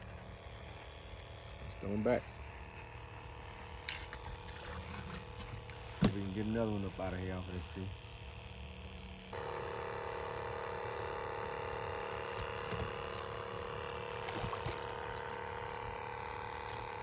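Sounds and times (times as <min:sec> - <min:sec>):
mechanical hum with whine: 0:00.0 - 0:17.0.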